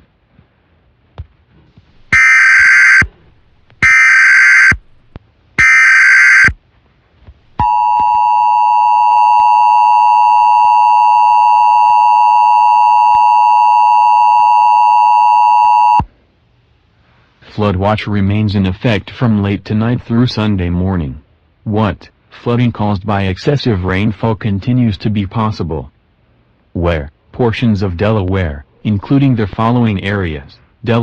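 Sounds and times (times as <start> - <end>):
digital header bursts: 2.1 - 3.1, 3.8 - 4.8, 5.6 - 6.5
two-tone attention signal: 3.8 - 4.8, 5.6 - 6.5, 7.6 - 16.0.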